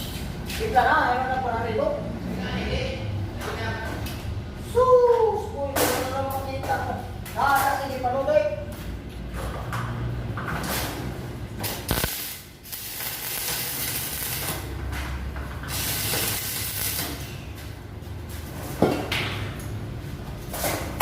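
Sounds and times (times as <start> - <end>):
welding arc sizzling and crackling: 10.7 - 17.8
welding machine hum: 10.7 - 18.5.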